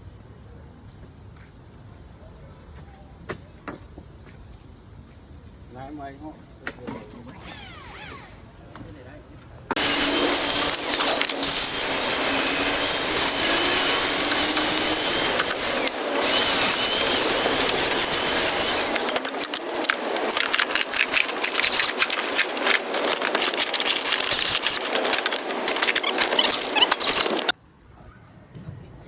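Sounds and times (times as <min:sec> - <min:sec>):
power tool cutting decking: 0:07.4 - 0:08.5, 0:09.8 - 0:27.5
rapid irregular clicks and rattles: 0:09.8 - 0:27.6.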